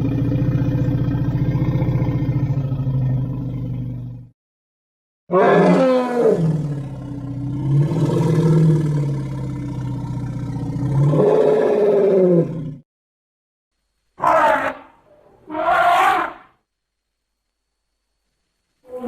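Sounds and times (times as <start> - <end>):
long low creature call: 5.3 - 9.2.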